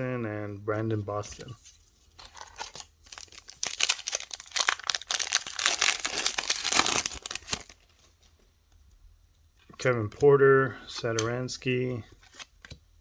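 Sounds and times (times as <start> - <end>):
foil wrapper crinkling and tearing: 2.3 - 8.1.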